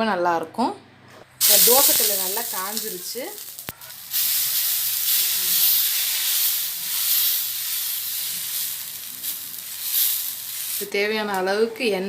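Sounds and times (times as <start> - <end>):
batter sizzling on a griddle: 1.4 - 11.0.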